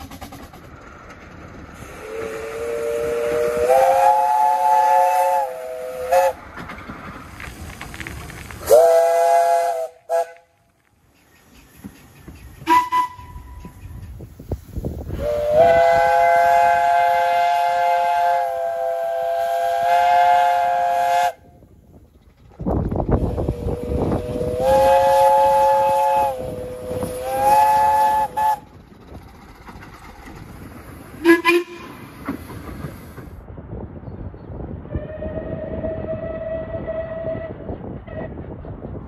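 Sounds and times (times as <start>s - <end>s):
steam locomotive chime whistle: 12.6s - 13.8s, 15.2s - 21.4s, 31.2s - 32.0s.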